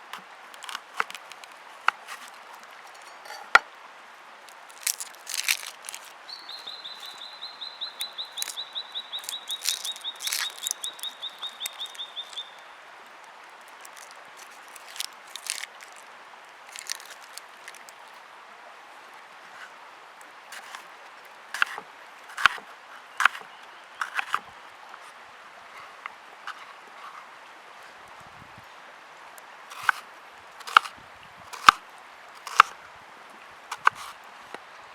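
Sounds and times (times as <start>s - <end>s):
bird trilling: 6.0s - 12.6s.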